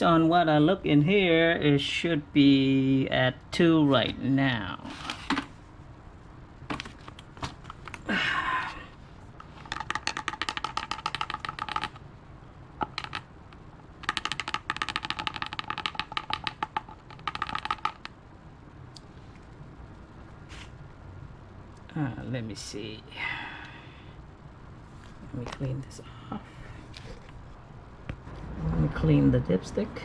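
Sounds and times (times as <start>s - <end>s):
rapid mechanical clicking: 9.5s - 12.0s, 12.8s - 18.2s.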